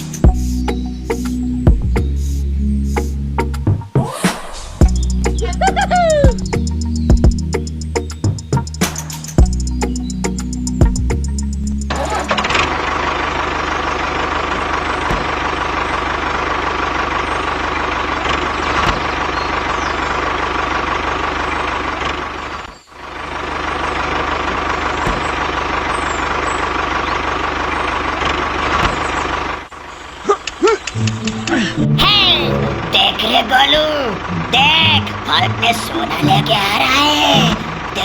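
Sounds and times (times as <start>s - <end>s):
engine running with knocking chug: 4.8s - 29.8s
short music: 31.0s - 38.0s.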